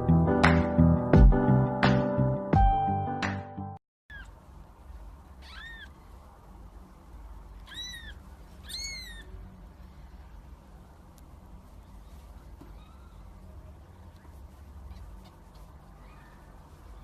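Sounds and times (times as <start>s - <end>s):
cat meowing: 4.1s - 4.3s, 5.4s - 6.0s, 7.6s - 9.4s.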